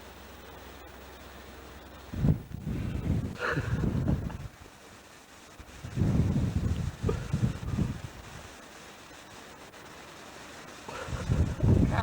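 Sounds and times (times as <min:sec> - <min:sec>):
faint steady hiss: 0:00.0 - 0:12.0
wind buffeting microphone: 0:02.0 - 0:04.7, 0:05.6 - 0:08.6, 0:10.9 - 0:12.0.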